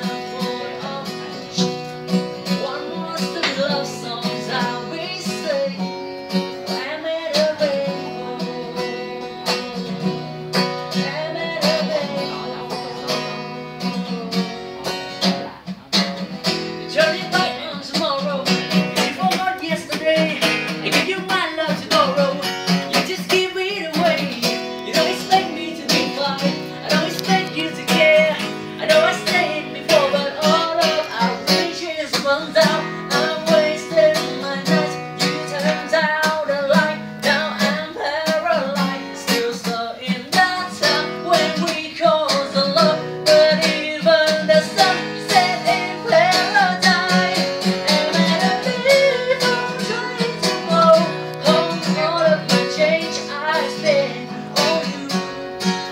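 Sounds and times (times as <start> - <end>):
acoustic guitar strummed and picked: 0.0 - 55.9.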